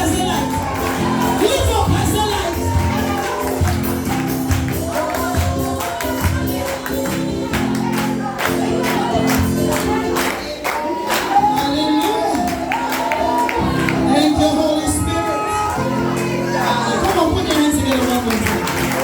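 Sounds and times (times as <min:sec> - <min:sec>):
steady percussion beat: 0:00.0 - 0:07.8
congregation singing: 0:00.0 - 0:19.0
keyboard and bass: 0:00.0 - 0:19.0.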